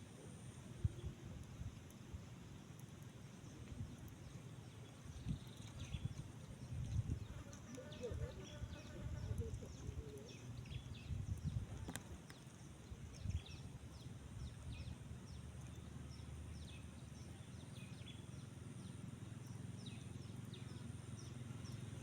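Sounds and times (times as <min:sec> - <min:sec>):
birds chirping: 0:03.4 - 0:12.4.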